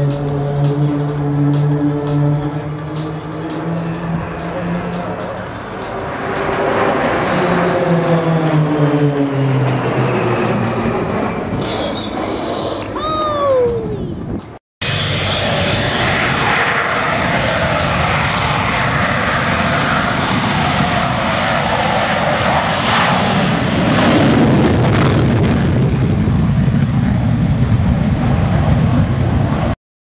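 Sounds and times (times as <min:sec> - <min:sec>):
aircraft passing: 0:00.0 - 0:29.8
heavy rumble: 0:00.0 - 0:29.8.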